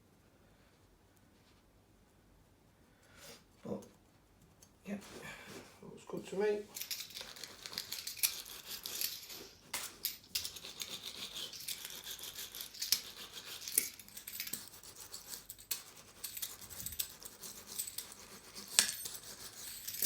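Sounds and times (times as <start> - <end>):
scratchy brushing and rubbing: 6.3 - 20.0.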